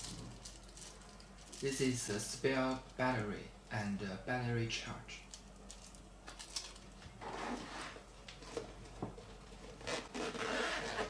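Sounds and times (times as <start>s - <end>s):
items rustling when handled: 0.0s - 3.0s, 5.2s - 11.0s.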